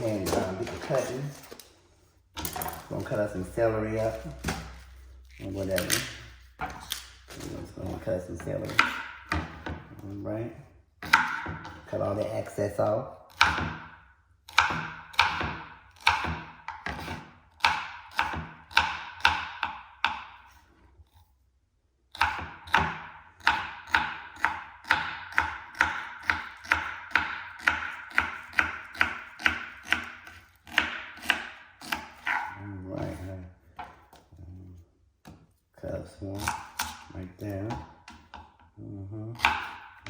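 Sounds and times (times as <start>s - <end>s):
knife chopping on cutting board: 3.8s - 10.2s, 11.0s - 12.5s, 13.3s - 20.6s, 22.1s - 34.3s, 36.4s - 38.5s, 39.4s - 40.0s.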